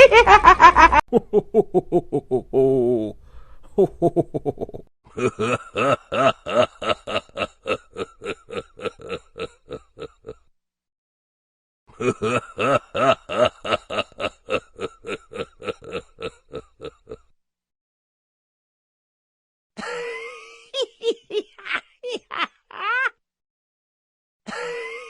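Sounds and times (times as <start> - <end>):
rapid ha laughter: 0.0 - 2.6, 3.8 - 10.4, 11.9 - 17.2, 19.8 - 23.2.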